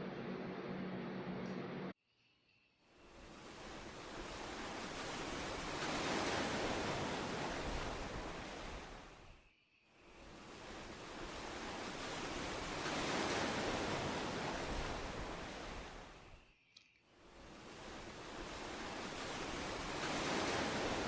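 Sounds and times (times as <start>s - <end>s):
rushing surf or wind: 3.1s - 9.4s, 10.0s - 16.4s, 17.2s - 21.0s.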